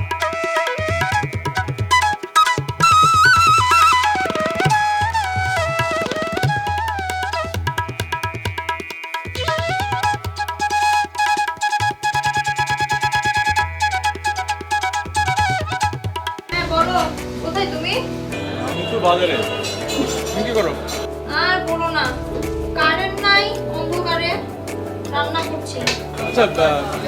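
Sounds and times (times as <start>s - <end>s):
flute-like melody: 0.0s - 16.6s
tabla beat: 0.0s - 18.0s.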